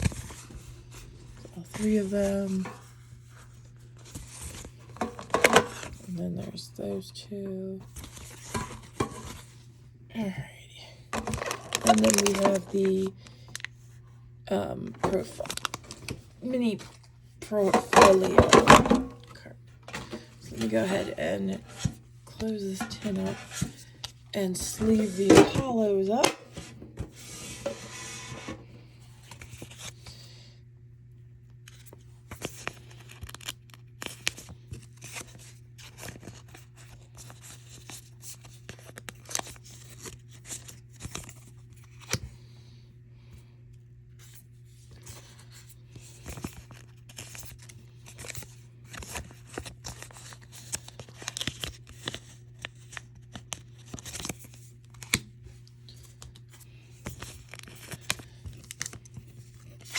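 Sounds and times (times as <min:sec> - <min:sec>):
plastic sleeves rustling: 0:00.0 - 0:06.6, 0:11.1 - 0:30.1, 0:44.2 - 0:59.9.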